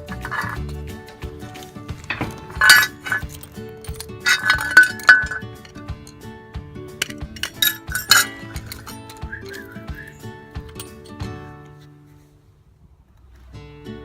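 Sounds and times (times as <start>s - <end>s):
screwdriver and metal parts clinking: 0.0s - 6.3s, 7.0s - 11.9s
loud ringing metal clinks: 2.0s - 6.2s, 7.0s - 9.7s.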